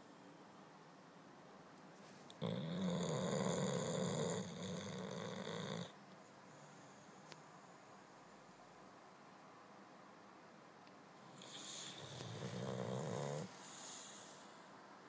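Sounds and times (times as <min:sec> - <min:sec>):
dog snoring: 0:02.3 - 0:06.0, 0:11.3 - 0:14.6.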